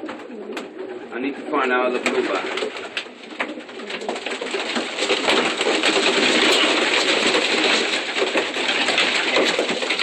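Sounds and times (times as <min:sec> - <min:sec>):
pigeons flapping wings: 0:01.9 - 0:10.0.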